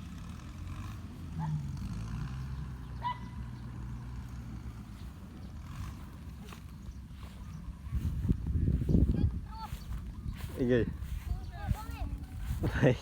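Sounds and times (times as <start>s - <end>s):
low motor hum: 0.0s - 13.0s
dog yelping: 1.4s - 1.7s.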